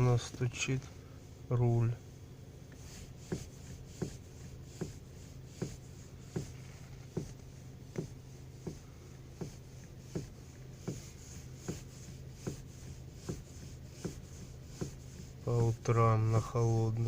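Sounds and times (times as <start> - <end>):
steady low hum: 0.0 - 17.0
sharp knock in car steering: 4.8 - 8.8.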